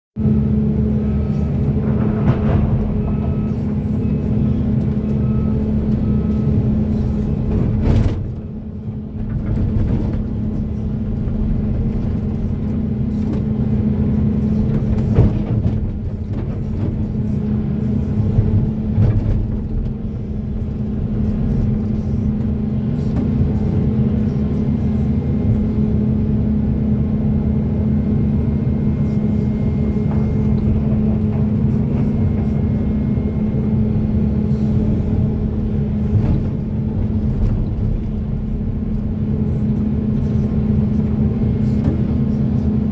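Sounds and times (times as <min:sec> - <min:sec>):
excavator diesel engine droning: 0:00.2 - 0:42.9
digging knocks and clanks: 0:01.4 - 0:05.5.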